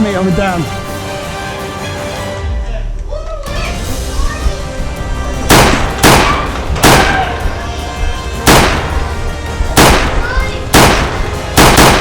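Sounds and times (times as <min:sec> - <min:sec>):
background music: 0:00.0 - 0:12.0
loud gunshot-like blasts: 0:05.5 - 0:07.4, 0:08.5 - 0:09.2, 0:09.8 - 0:12.0.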